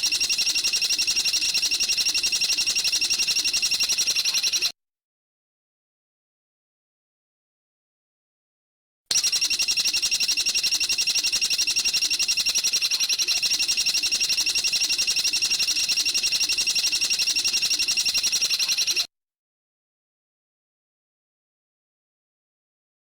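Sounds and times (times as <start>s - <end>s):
bird high-pitched trill: 0.0s - 4.7s, 9.1s - 19.1s.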